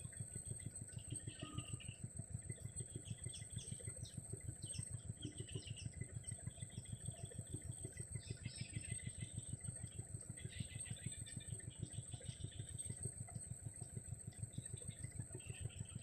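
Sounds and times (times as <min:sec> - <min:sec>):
constant high tone: 0:01.1 - 0:02.1.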